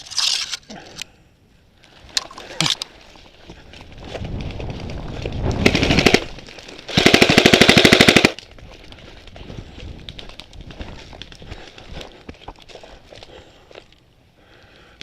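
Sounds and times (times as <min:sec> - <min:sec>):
airsoft gun firing full-auto: 0:05.6 - 0:06.3, 0:06.9 - 0:08.4.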